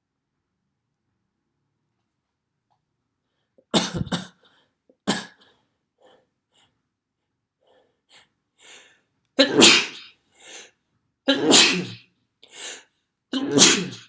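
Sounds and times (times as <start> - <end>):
person sneezing: 3.8 - 4.4, 5.1 - 5.4, 9.4 - 10.7, 11.3 - 12.0, 12.6 - 12.8, 13.4 - 14.0
faint short breaths: 7.6 - 9.1.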